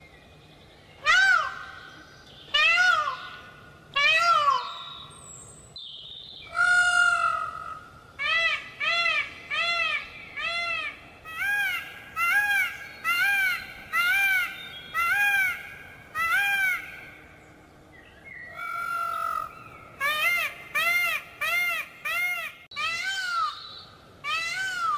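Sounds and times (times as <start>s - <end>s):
peafowl calling: 6.5s - 17.2s, 18.5s - 24.9s.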